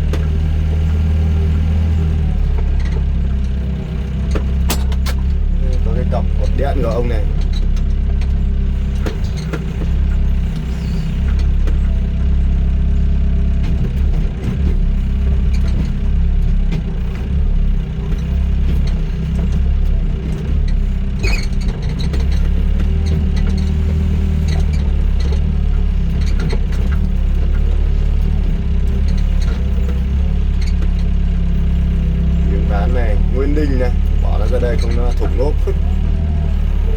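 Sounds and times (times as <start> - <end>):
diesel engine running: 0.0 - 36.9
knocks and clanks: 2.4 - 6.6.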